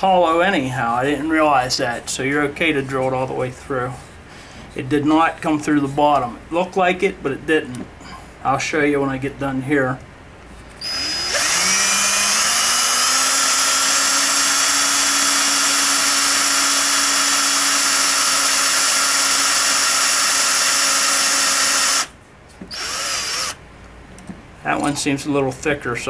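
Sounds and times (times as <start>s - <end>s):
power drill boring plastic: 10.8s - 22.1s, 22.7s - 23.6s.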